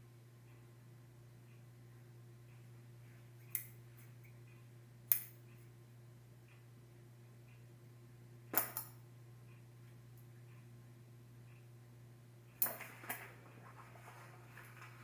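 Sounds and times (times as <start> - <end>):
small scissors snipping thread: 3.4 - 3.8, 5.1 - 5.3.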